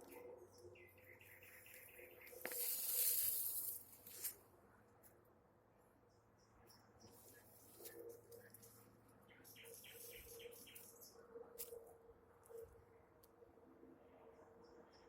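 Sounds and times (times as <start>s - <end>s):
nightingale singing: 9.3s - 11.2s.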